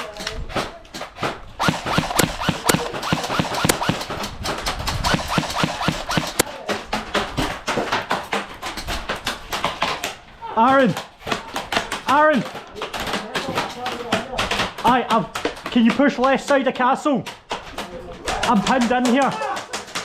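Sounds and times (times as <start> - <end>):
short whirs: 1.6 - 4.2, 4.9 - 6.4
airsoft guns firing: 1.6 - 10.0.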